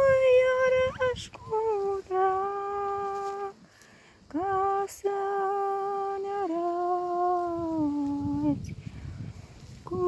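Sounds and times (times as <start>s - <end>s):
woman singing unaccompanied: 0.0s - 8.9s, 9.8s - 10.0s.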